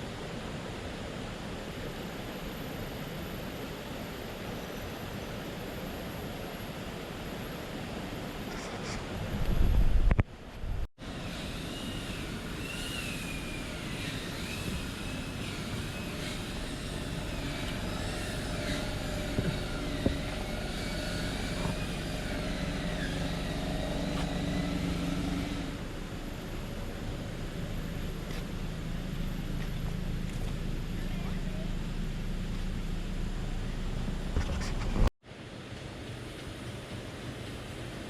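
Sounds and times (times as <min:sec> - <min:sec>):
drone propellers whining: 0:11.0 - 0:35.1.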